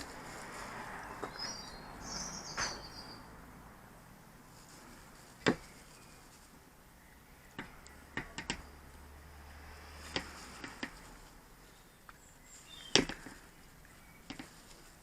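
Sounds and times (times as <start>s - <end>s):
tools tapping and clicking: 7.6s - 8.6s.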